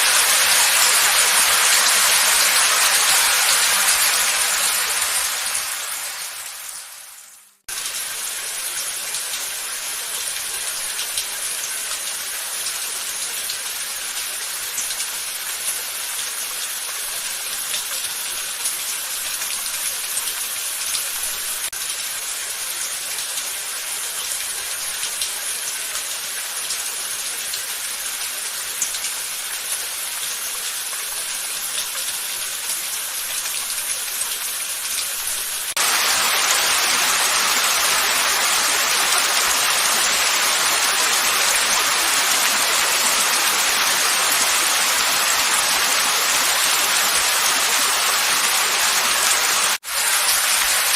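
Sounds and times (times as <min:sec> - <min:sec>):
heavy downpour: 0:00.0 - 0:50.9
steady rain: 0:00.0 - 0:50.9.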